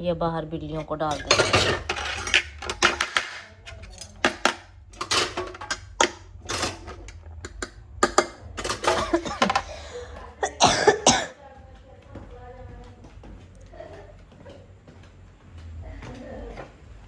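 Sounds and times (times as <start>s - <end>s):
dishes and cutlery clinking: 0.7s - 11.3s
dishes clattering: 0.8s - 11.3s.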